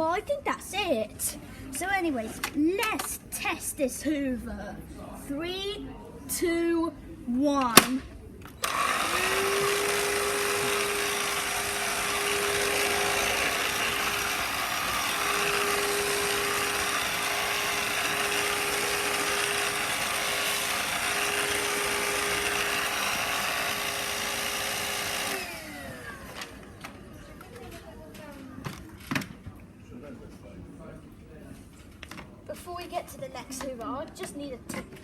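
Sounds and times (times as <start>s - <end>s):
vacuum cleaner motor whine: 8.6s - 27.0s.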